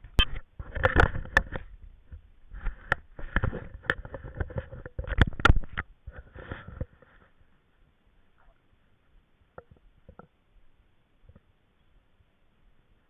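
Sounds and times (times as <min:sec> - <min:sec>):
rustling: 0:00.0 - 0:10.3.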